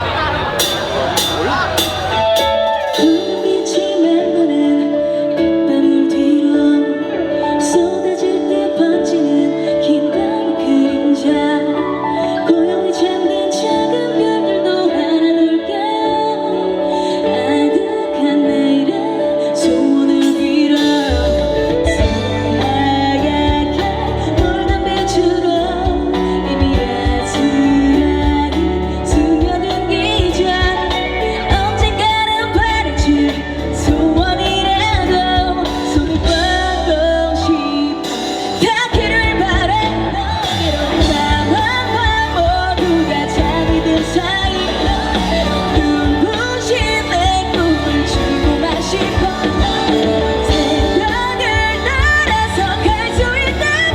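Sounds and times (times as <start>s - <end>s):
bass guitar: 0.0s - 3.6s, 21.0s - 53.9s
drums: 0.0s - 9.1s, 19.6s - 53.9s
woman singing: 0.0s - 53.9s.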